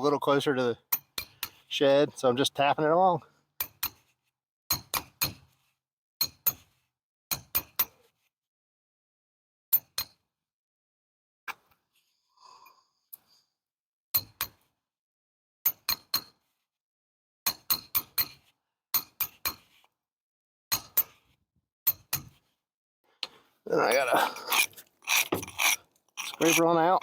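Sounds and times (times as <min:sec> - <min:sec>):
hammer tapping chisel on concrete: 0:24.5 - 0:27.0.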